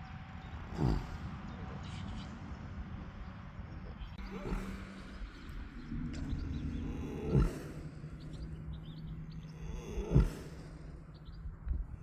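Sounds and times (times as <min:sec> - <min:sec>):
horse snoring: 0:00.7 - 0:01.3, 0:04.2 - 0:11.0.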